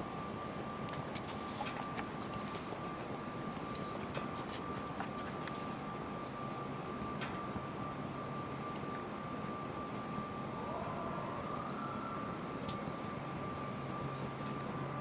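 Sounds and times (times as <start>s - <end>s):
wood fire crackling and popping: 0.0s - 15.0s
thin high whine: 10.3s - 14.1s.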